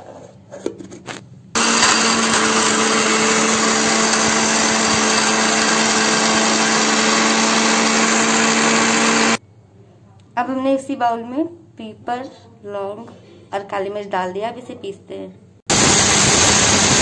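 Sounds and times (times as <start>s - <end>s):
mixer grinder motor humming: 1.6s - 9.4s, 15.7s - 17.0s.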